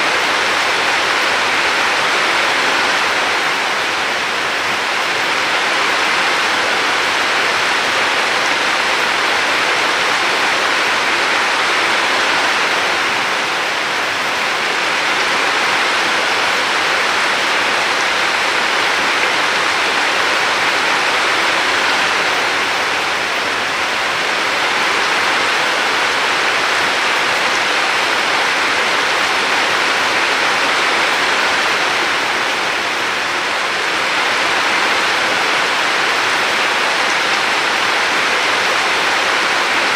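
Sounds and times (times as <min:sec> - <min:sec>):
rushing water: 0:00.0 - 0:39.9.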